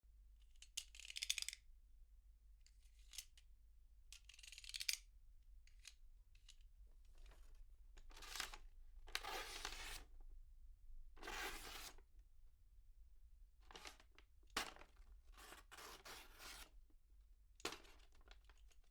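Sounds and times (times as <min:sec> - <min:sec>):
box cutter slicing paper: 0:11.2 - 0:11.9, 0:15.4 - 0:16.7.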